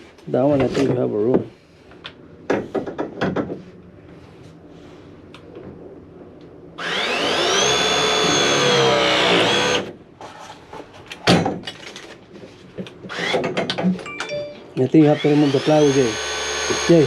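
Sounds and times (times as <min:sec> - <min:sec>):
power tool motor whine: 0:06.8 - 0:09.9, 0:13.1 - 0:13.4, 0:15.1 - 0:17.0.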